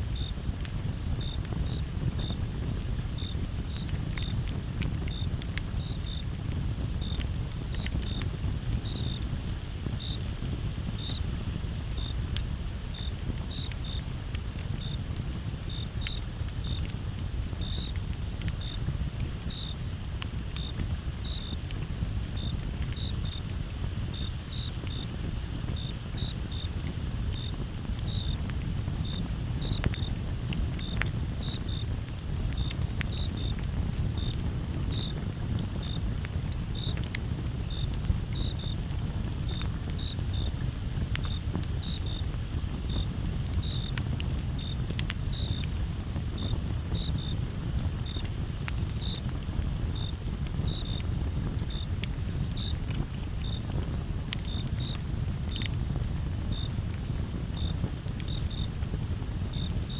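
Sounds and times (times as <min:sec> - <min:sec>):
campfire crackling and popping: 0:00.0 - 0:59.9
crickets chirping: 0:00.0 - 0:59.9.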